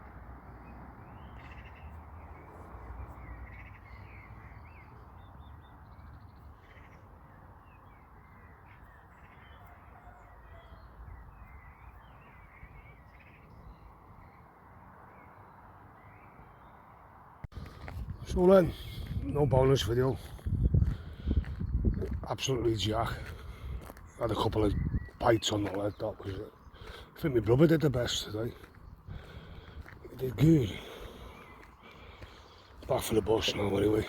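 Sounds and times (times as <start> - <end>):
birds chirping: 0.0 - 34.0
crow cawing: 6.6 - 7.0.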